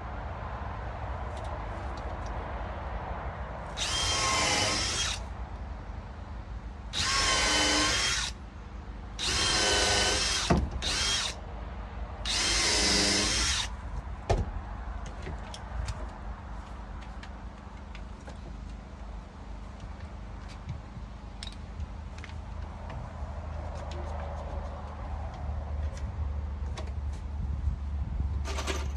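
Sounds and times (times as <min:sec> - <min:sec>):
power drill motor whine: 0:03.8 - 0:05.2, 0:07.0 - 0:08.4, 0:09.2 - 0:11.4, 0:12.3 - 0:13.7.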